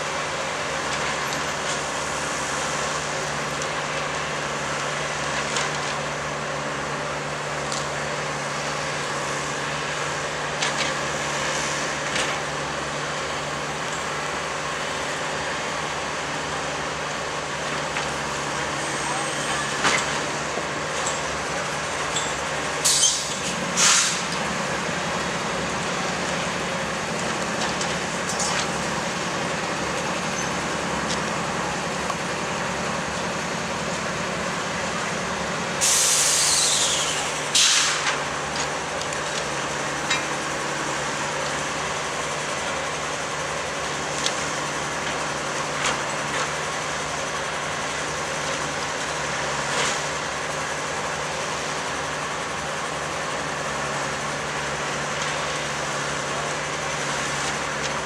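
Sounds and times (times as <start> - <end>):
machinery engine hum: 0.0 - 58.0
loud air hiss: 22.8 - 24.3, 35.8 - 38.1.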